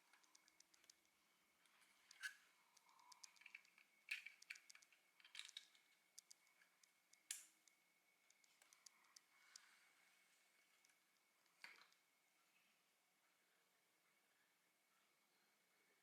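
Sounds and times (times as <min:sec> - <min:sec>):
plastic parts clicking: 0:02.1 - 0:07.6.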